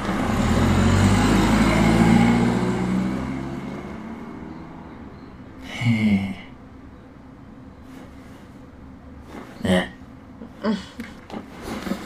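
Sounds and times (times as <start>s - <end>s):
car engine running: 0.0s - 5.8s.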